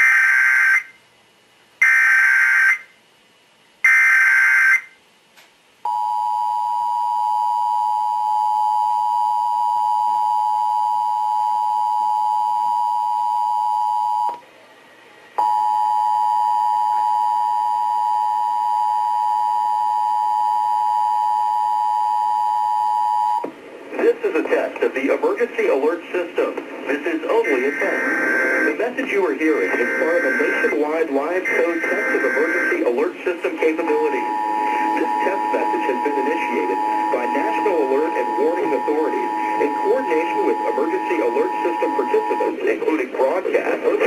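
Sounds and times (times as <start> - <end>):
digital buzzing bursts: 27.4 - 33.0, 33.8 - 42.6.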